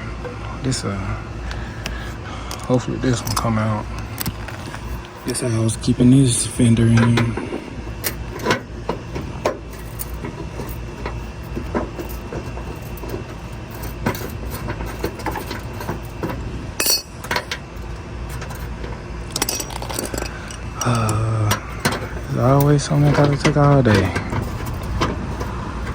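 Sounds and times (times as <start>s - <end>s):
sharp ringing metal clink: 16.8s - 17.4s
metallic clinks of hand tools: 16.8s - 17.6s.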